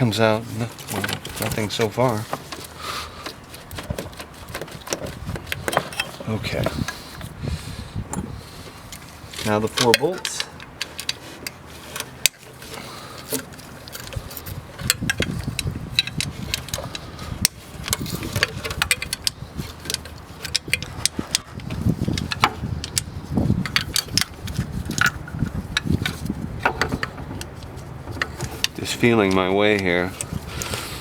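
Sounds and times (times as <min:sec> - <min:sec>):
rubbing and handling noise: 0:00.0 - 0:31.0
wrench clicking on bolt: 0:13.3 - 0:23.1.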